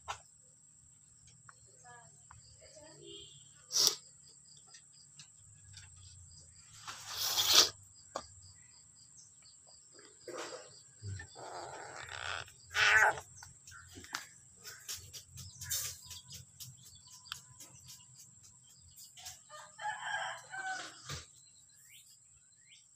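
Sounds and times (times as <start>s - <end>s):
birds calling: 6.8s - 19.4s.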